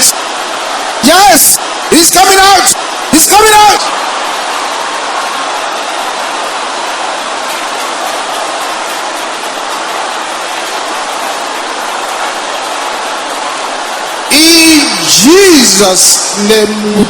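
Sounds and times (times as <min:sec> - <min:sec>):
congregation praying aloud: 0:01.0 - 0:04.0, 0:14.3 - 0:17.0.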